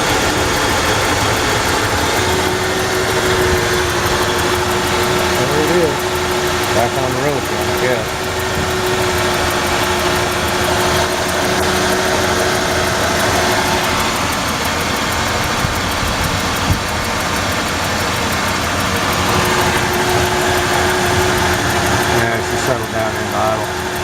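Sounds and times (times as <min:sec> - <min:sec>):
regular engine ticking: 0:00.0 - 0:24.0
truck engine idling: 0:00.0 - 0:24.0.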